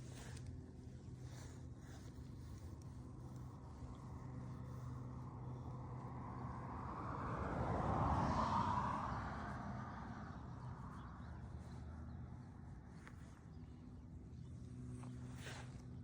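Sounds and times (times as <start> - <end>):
vehicle passing: 4.5 - 12.4.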